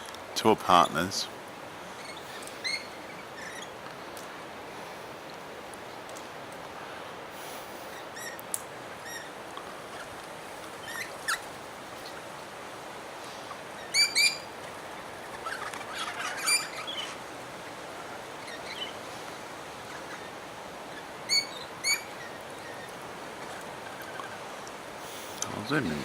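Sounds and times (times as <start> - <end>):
parrots whistled calls: 13.9 - 14.5, 21.3 - 22.1
parrots squabbling: 15.3 - 17.2.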